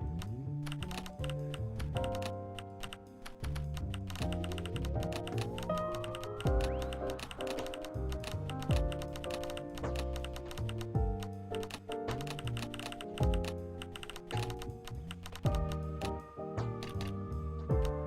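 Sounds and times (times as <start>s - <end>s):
fast clicking percussion: 0.7s - 15.8s
deep bass hits: 10.9s - 11.3s, 15.5s - 16.0s.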